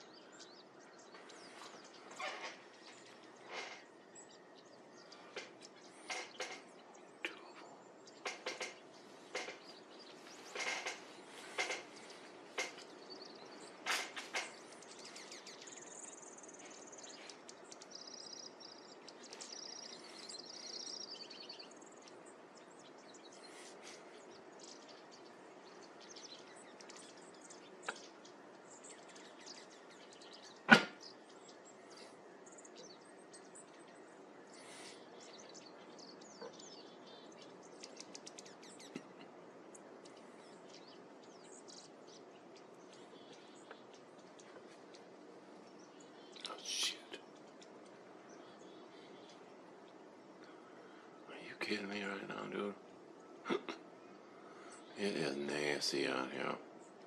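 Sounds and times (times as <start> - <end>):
low background rush: 0.0 - 57.0
small birds chirping: 0.0 - 57.0
loud sharp click: 13.9 - 14.5.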